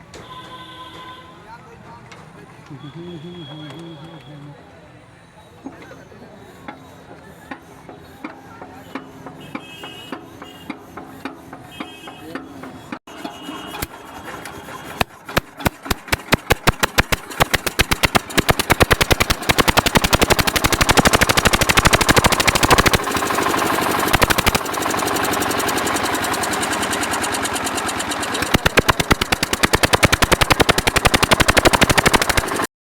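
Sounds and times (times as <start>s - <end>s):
generator engine starting and running: 13.2s - 32.7s.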